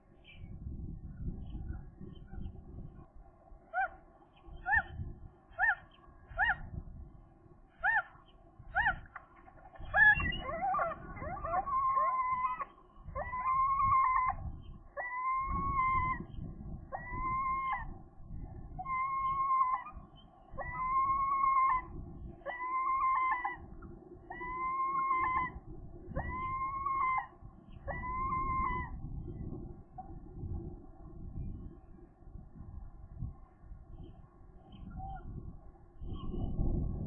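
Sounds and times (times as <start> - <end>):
gull calling: 8.8 - 14.4, 15.0 - 16.3, 17.0 - 18.0, 18.8 - 20.0, 20.6 - 23.7, 24.3 - 29.0.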